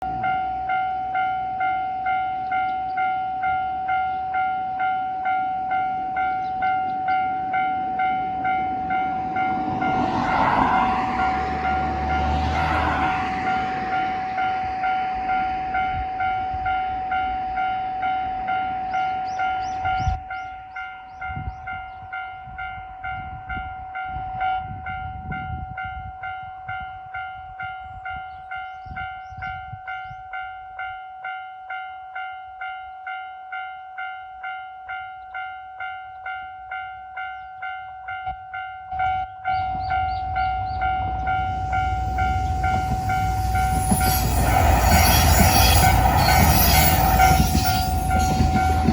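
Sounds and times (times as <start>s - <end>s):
train rumbling: 0.0s - 30.4s, 38.1s - 48.9s
level crossing warning bell: 0.0s - 48.9s
low rumble: 39.5s - 48.9s.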